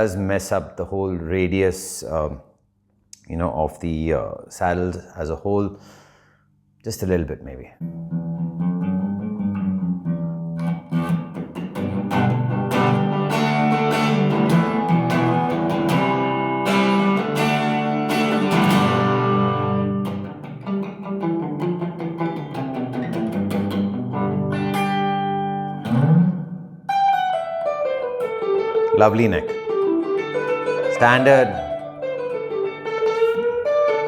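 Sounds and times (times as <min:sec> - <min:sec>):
clean electric guitar: 0:07.8 - 0:34.0.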